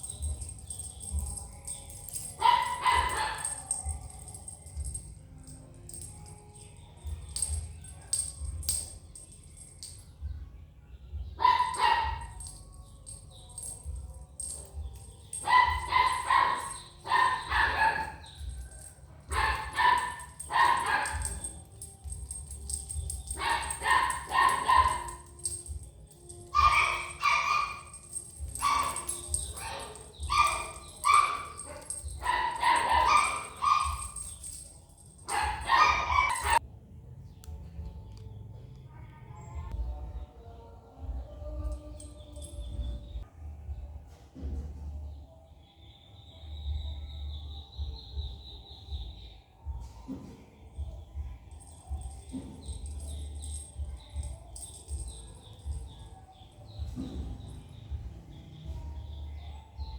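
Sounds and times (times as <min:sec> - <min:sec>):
dog barking: 0:02.1 - 0:05.0, 0:11.4 - 0:12.5, 0:15.4 - 0:21.7, 0:22.7 - 0:36.6, 0:49.8 - 0:59.9.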